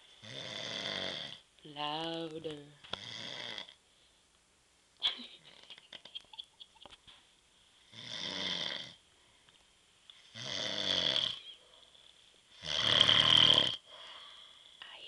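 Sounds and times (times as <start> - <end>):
man snoring: 0.2 - 1.4, 3.0 - 3.8, 7.9 - 9.0, 10.3 - 11.4, 12.6 - 13.9.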